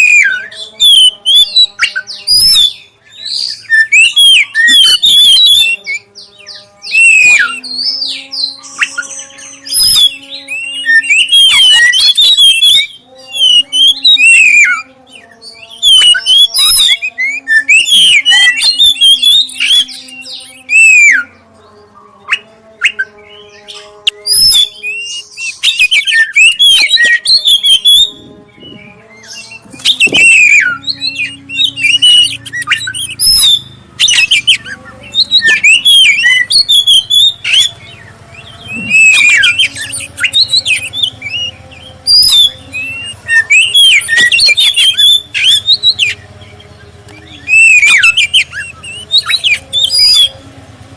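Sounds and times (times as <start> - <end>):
bird singing whistles and chirps: 0.0 - 21.4, 22.2 - 50.4
steady low tones: 27.2 - 50.9.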